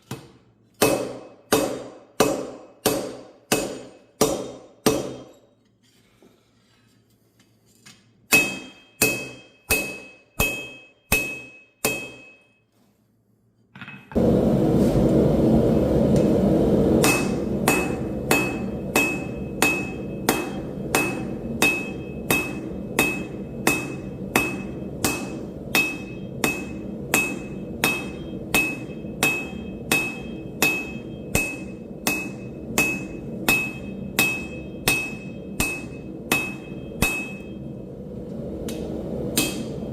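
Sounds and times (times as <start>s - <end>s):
hammer striking steel on anvil: 0.0s - 5.5s, 8.2s - 12.6s, 16.9s - 37.7s, 38.7s - 39.9s
steady rushing noise: 14.2s - 39.9s.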